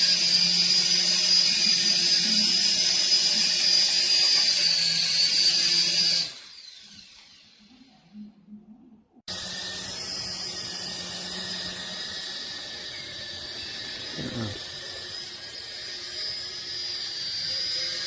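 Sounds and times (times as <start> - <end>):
toy helicopter motors whining: 0.0 - 8.0, 9.3 - 18.0.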